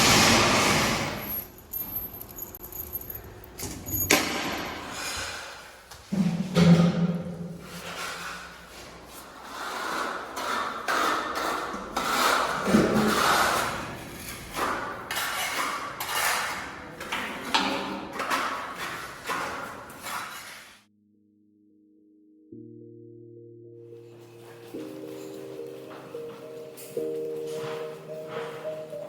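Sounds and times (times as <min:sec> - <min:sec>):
faint music tones: 0:22.4 - 0:29.0.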